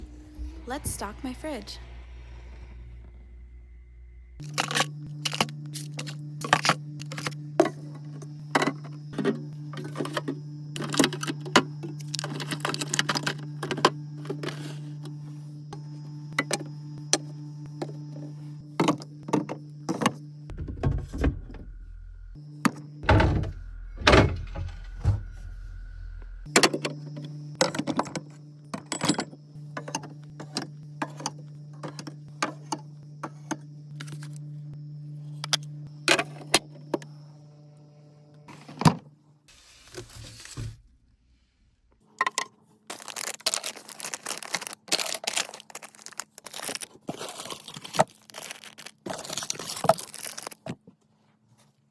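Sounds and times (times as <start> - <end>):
fridge low hum: 0.0 - 51.9
packaging rustling: 4.4 - 7.4, 9.8 - 14.9, 42.9 - 50.8
items thunking and clinking in fridge: 4.4 - 21.7, 22.6 - 25.4, 26.5 - 34.4, 35.5 - 37.1, 38.5 - 39.1, 42.1 - 51.0.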